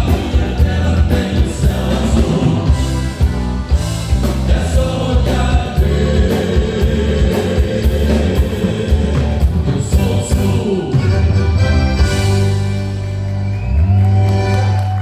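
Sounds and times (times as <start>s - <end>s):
live band playing folk music: 0.0s - 15.0s
person singing: 4.4s - 11.6s.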